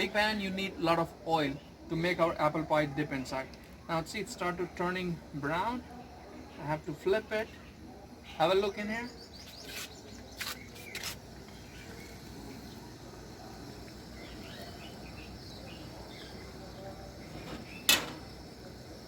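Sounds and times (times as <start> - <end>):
faint bird chirps: 5.9 - 17.9
pastry sizzling in hot oil: 8.6 - 19.0.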